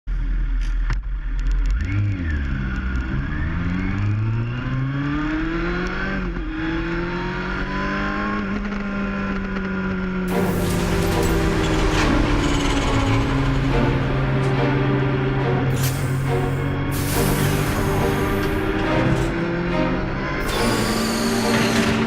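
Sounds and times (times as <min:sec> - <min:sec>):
motorcycle engine revving: 0:01.2 - 0:22.0.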